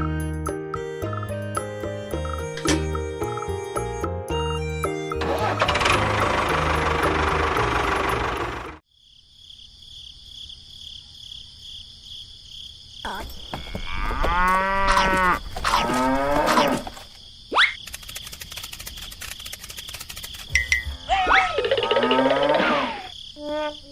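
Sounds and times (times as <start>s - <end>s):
animal mooing calls: 13.7s - 17.0s, 21.1s - 23.1s.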